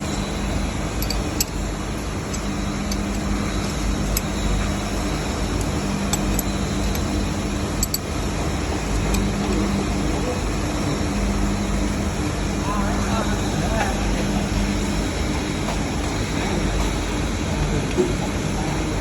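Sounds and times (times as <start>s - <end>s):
industrial machinery humming: 0.0s - 19.0s.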